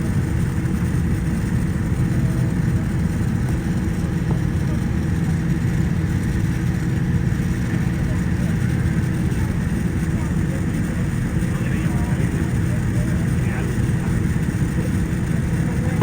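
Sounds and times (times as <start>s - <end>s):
jet engines rumbling: 0.0s - 16.0s.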